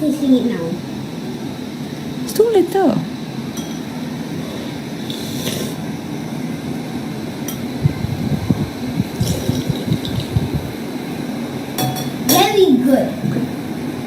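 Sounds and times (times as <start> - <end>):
room hum: 0.0 - 14.0
tableware clinking: 3.6 - 3.9, 9.2 - 10.4, 11.8 - 12.2.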